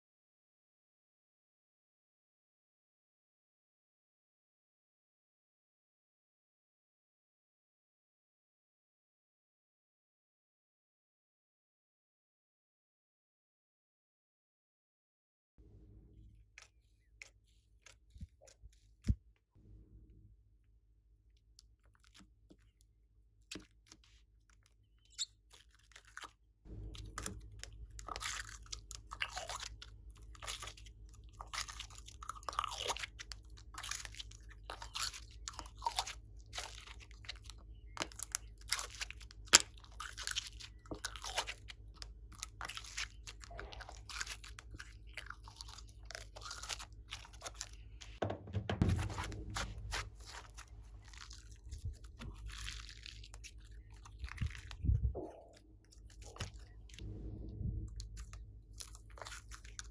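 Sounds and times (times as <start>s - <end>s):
slime squishing with crackling pops: 23.4s - 48.2s, 48.8s - 57.0s.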